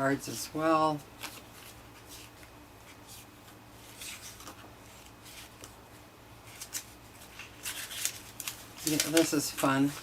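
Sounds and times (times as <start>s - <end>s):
low steady hum: 0.0s - 10.0s
paper cards rustling: 0.9s - 10.0s.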